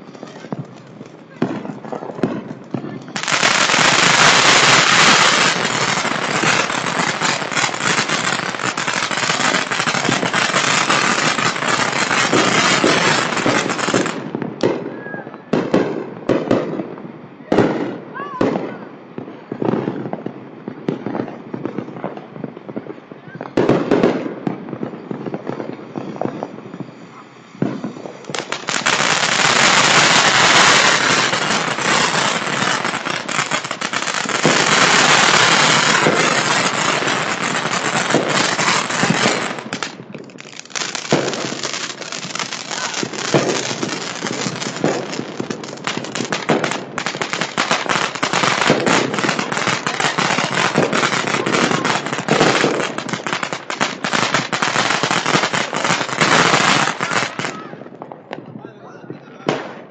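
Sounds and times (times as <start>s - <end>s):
fireworks crackling and popping: 0.0s - 59.9s.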